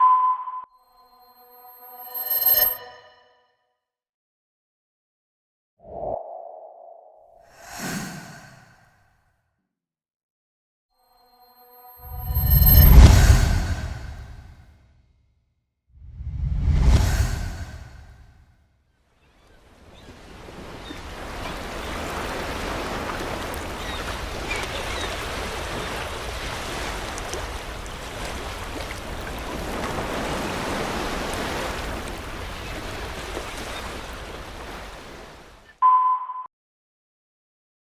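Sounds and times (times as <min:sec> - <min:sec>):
short high beep: 0:00.0 - 0:03.3, 0:11.2 - 0:14.0, 0:35.8 - 0:36.5
ocean waves rushing: 0:07.5 - 0:08.8, 0:12.0 - 0:14.6, 0:16.2 - 0:18.2, 0:19.4 - 0:35.6
whoosh: 0:12.0 - 0:14.6, 0:16.0 - 0:18.4.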